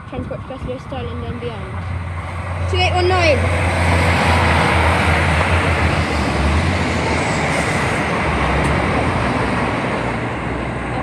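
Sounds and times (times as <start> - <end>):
diesel railcar passing: 0.0 - 11.0.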